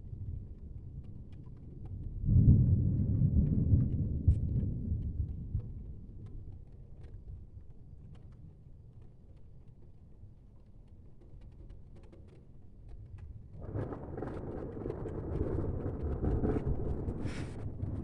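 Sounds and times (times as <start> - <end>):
thunder rumble: 1.9 - 6.3, 13.6 - 18.0.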